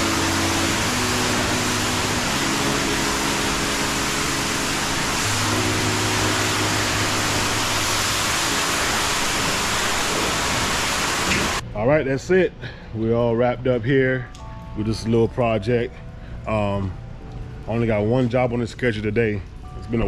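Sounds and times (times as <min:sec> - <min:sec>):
pressure washer spraying water: 0:00.0 - 0:11.6
washer engine running: 0:00.0 - 0:11.6.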